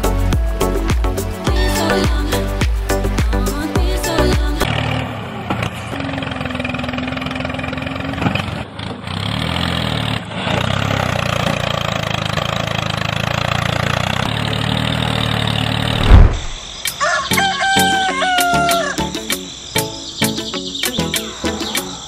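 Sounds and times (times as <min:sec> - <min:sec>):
small engine running: 0:04.6 - 0:16.1
loud thump: 0:15.9 - 0:16.7.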